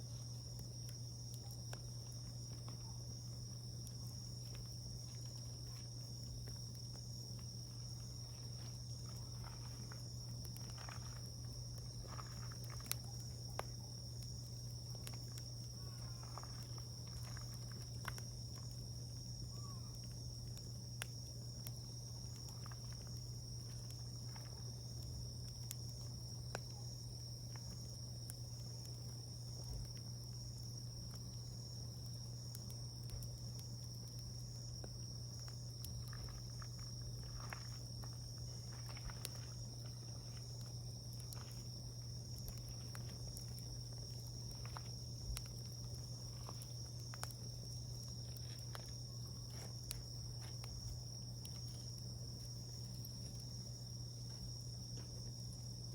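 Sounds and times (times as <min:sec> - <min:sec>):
campfire crackling and popping: 0:00.0 - 0:55.9
crickets trilling: 0:00.0 - 0:55.9
steady low hum: 0:00.0 - 0:55.9.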